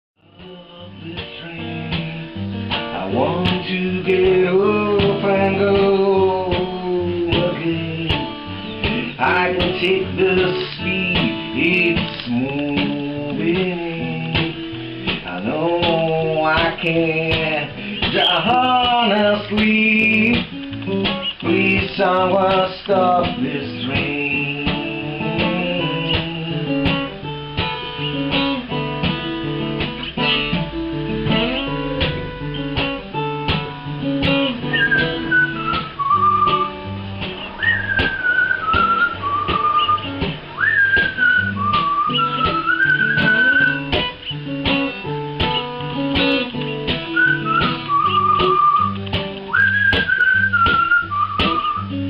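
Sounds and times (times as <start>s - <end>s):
acoustic guitar strummed: 0.2s - 52.0s
person whistling a melody: 17.8s - 19.2s, 34.5s - 44.2s, 47.0s - 52.0s.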